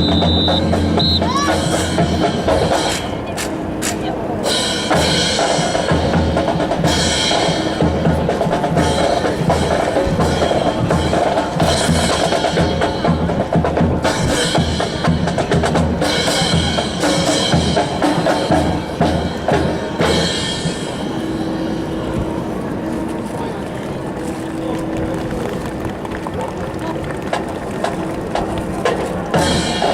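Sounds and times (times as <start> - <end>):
drum-heavy music: 0.0 - 22.2, 27.7 - 29.9
sharp percussive clicks: 2.9 - 4.1.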